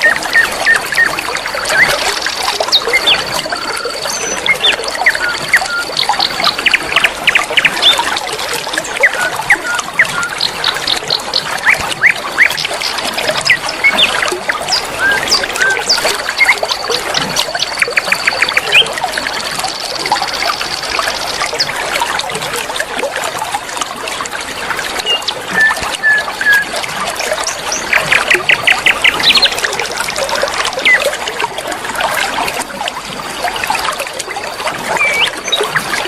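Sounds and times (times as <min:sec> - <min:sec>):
river water flowing: 0:00.0 - 0:36.0
small birds chirping: 0:09.0 - 0:21.8, 0:27.3 - 0:29.6, 0:34.9 - 0:35.8.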